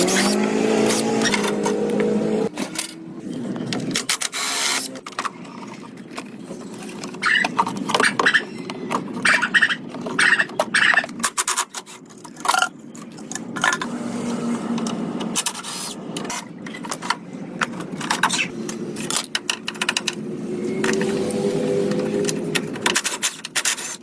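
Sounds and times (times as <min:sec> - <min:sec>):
sharp clicks and knocks: 0:16.2 - 0:20.2.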